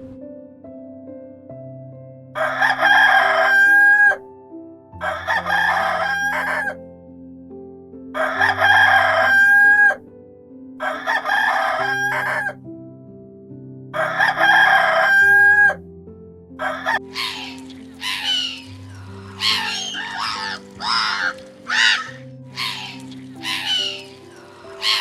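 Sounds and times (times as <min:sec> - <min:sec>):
soft background music: 0:00.0 - 0:25.0
rooster crowing: 0:02.4 - 0:04.2, 0:05.0 - 0:06.8, 0:08.2 - 0:10.0, 0:10.8 - 0:12.6, 0:14.0 - 0:15.8, 0:16.6 - 0:25.0
harsh animal call: 0:16.6 - 0:25.0.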